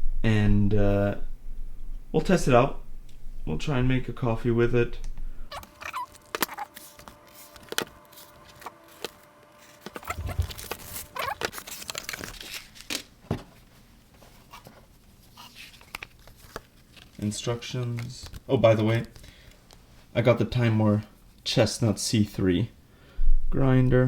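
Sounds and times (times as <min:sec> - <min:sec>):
paper packaging rustling: 0:05.5 - 0:19.8.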